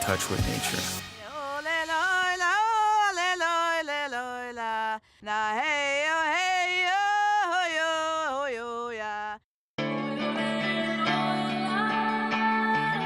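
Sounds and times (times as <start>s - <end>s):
person singing unaccompanied: 0.0s - 13.0s.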